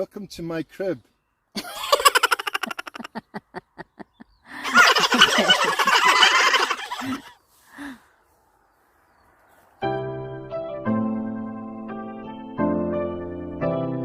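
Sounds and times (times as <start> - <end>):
turkeys gobbling: 1.9 - 3.4, 4.5 - 7.3.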